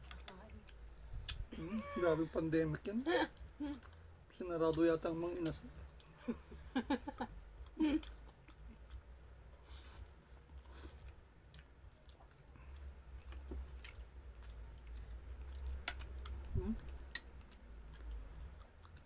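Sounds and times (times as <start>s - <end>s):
steady low hum: 0.0s - 19.0s
close chewing: 3.3s - 6.2s, 7.6s - 19.0s.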